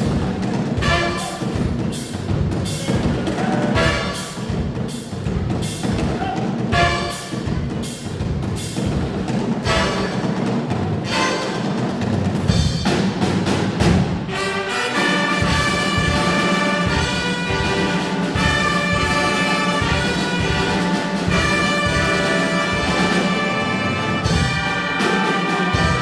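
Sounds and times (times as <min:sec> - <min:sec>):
brass-led orchestral music: 0:00.0 - 0:02.0, 0:03.0 - 0:04.6, 0:06.7 - 0:07.6, 0:09.6 - 0:12.1, 0:14.1 - 0:26.0.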